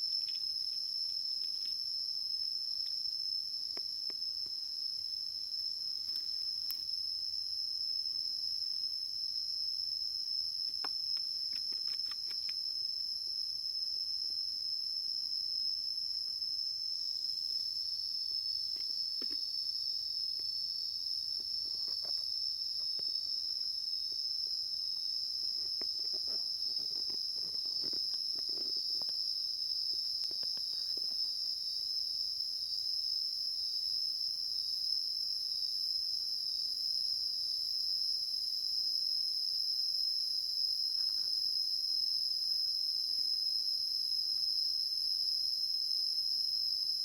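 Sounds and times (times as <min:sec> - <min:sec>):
insects chorus: 0:00.0 - 0:47.0.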